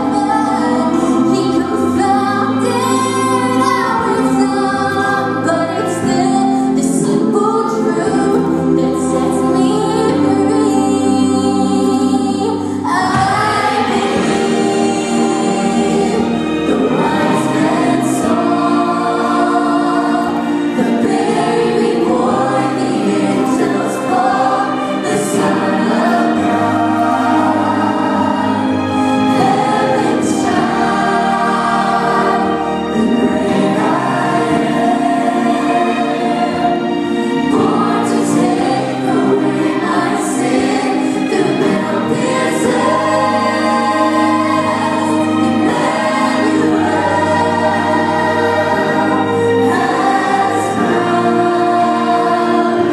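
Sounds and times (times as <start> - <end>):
church choir singing: 0.0 - 52.9.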